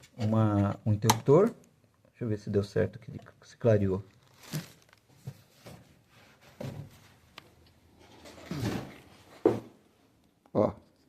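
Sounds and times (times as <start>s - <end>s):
soft knocks and rustles: 4.4s - 7.4s, 8.0s - 9.8s.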